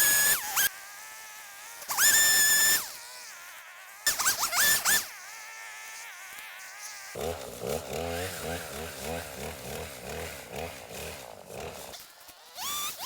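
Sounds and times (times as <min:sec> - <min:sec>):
chainsaw revving and idling: 0:03.7 - 0:13.0.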